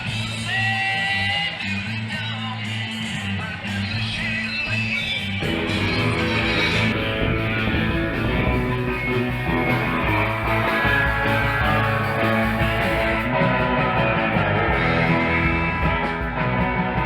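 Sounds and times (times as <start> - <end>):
surf rock electric guitar music: 5.4 - 17.0.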